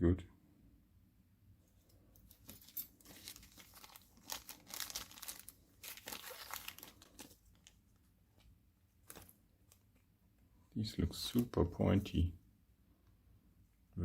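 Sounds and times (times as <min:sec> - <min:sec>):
packaging crinkling and rustling: 0:02.2 - 0:10.0.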